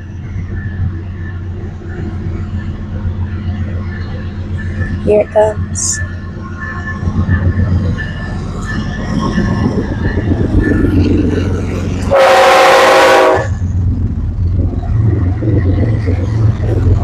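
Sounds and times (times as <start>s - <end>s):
crossing bell dinging: 0.0s - 13.8s
freight train locomotives rumbling: 0.0s - 17.0s
locomotive horn blast: 12.0s - 13.6s.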